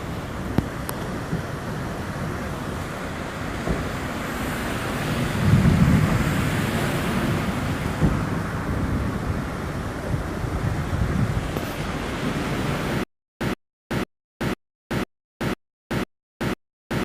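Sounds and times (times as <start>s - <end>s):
floodwater rushing: 0.0s - 13.0s
heavy rain falling: 0.0s - 13.0s
wind buffeting microphone: 0.0s - 13.0s.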